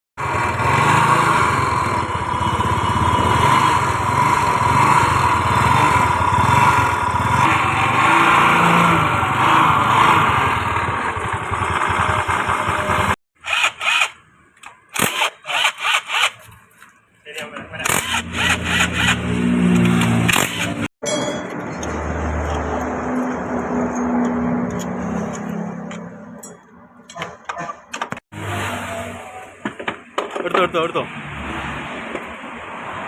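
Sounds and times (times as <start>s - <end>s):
scooter engine running: 0.2s - 14.1s, 17.8s - 20.9s.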